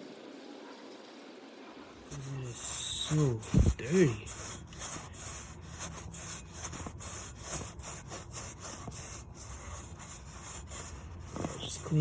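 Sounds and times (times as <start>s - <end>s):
rag rubbing on engine surface: 1.9s - 12.0s.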